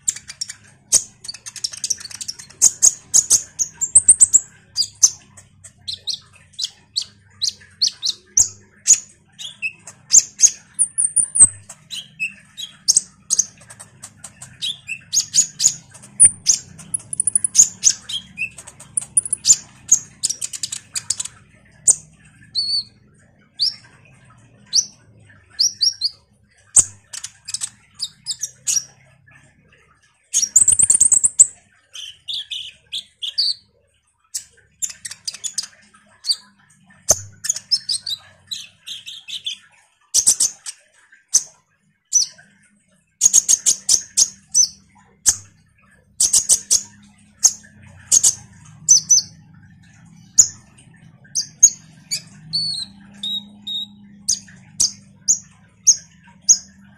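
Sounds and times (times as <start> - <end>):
sunbird chattering song: 0.0 - 23.9, 30.4 - 33.7, 50.2 - 56.9.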